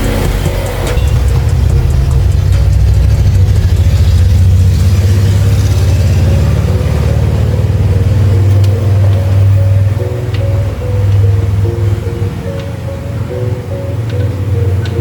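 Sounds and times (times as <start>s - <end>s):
motor engine humming: 0.0s - 15.0s.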